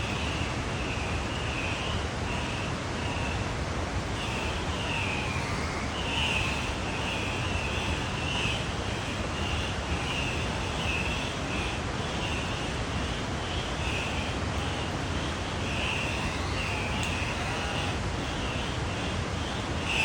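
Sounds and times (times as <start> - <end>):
steady rushing background noise: 0.0 - 20.0.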